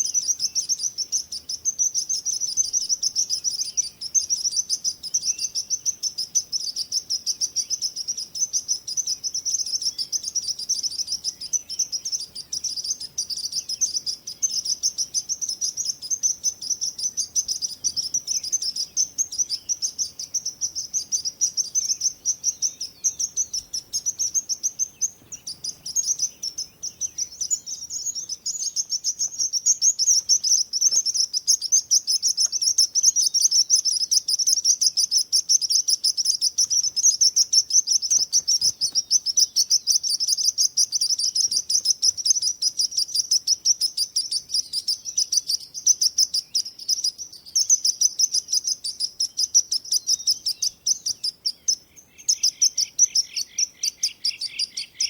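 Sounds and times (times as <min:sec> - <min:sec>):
songbirds chirping: 0:00.0 - 0:55.0.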